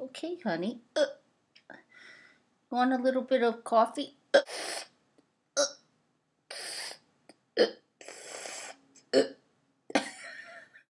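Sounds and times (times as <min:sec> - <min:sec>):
person hiccuping: 0:05.6 - 0:05.8, 0:07.6 - 0:07.8, 0:09.1 - 0:10.2.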